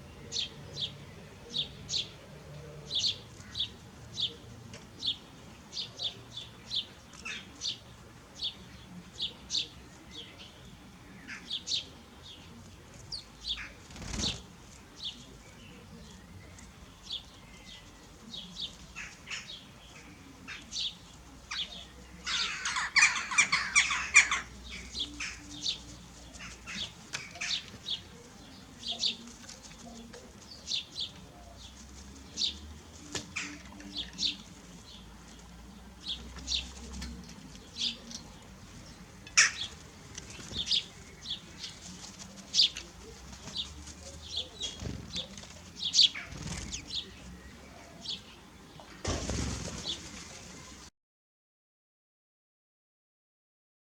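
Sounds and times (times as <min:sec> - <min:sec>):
birds chirping: 0:00.0 - 0:50.9
rustle: 0:00.1 - 0:22.4, 0:24.1 - 0:50.9
bird wings flapping: 0:13.8 - 0:14.6, 0:44.6 - 0:46.9, 0:49.0 - 0:50.8.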